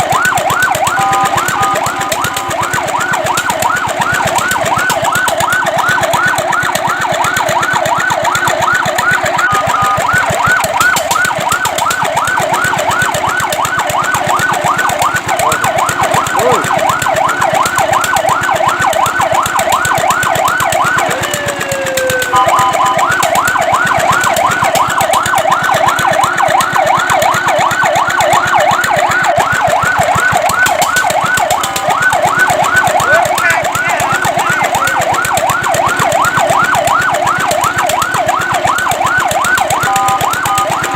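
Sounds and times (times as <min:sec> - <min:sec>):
fire truck siren yelping: 0:00.0 - 0:40.9.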